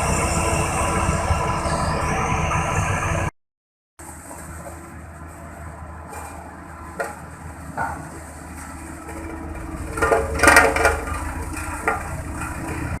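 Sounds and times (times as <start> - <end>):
road compactor engine running: 0.0 - 3.3, 4.0 - 13.0
knocks and clatter: 6.1 - 13.0.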